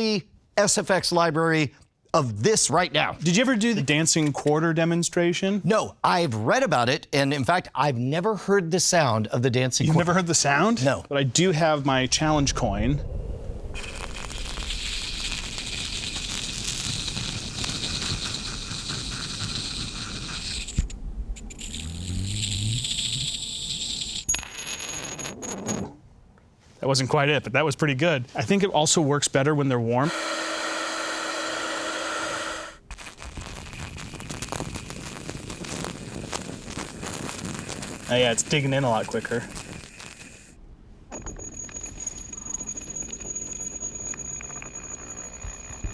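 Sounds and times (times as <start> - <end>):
dry ice hissing and crackling: 13.7 - 24.6, 30.0 - 40.6
singing tone from coin: 21.4 - 25.8, 41.1 - 45.9.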